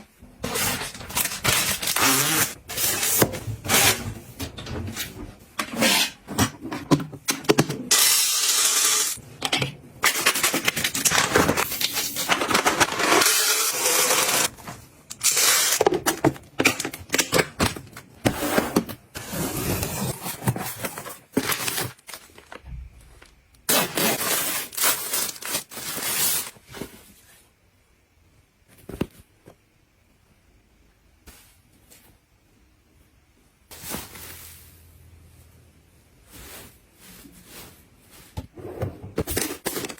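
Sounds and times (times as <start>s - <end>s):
packaging crinkling and rustling: 0.4s - 4.0s, 10.0s - 18.9s, 19.6s - 27.0s, 39.2s - 39.9s.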